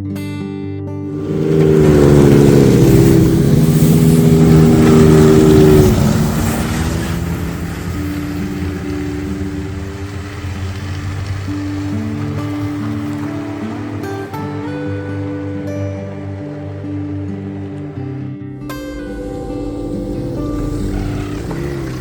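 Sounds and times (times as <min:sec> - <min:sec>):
background music: 0:00.9 - 0:22.0
snowmobile engine running: 0:01.1 - 0:22.0.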